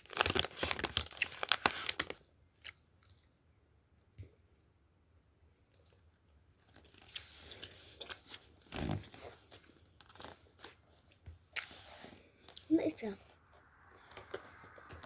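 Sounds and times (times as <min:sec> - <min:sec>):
child chewing jelly: 0:02.6 - 0:03.3, 0:05.6 - 0:08.7, 0:09.3 - 0:12.7.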